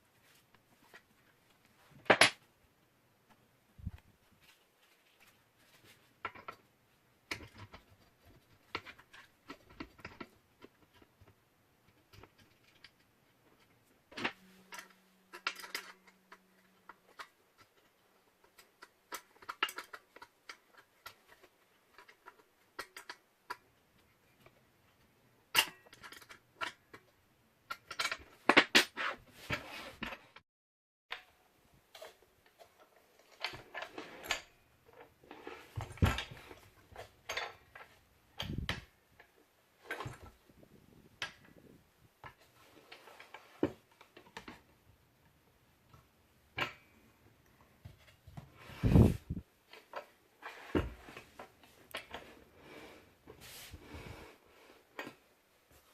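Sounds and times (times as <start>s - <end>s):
metal parts clicking and rattling: 11.9s - 23.6s, 27.7s - 28.8s.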